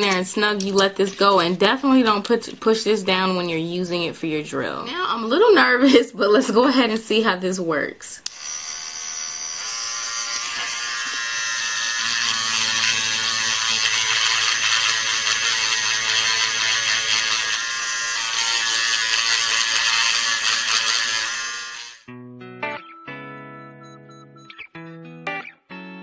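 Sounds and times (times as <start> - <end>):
electric nail drill whining: 8.2 - 22.1.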